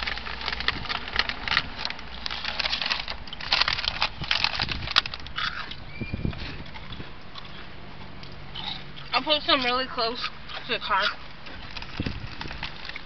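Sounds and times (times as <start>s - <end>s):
plastic snack bag crinkling: 0.0s - 6.4s, 11.2s - 13.0s
chips crunching: 0.0s - 9.2s, 10.5s - 13.0s.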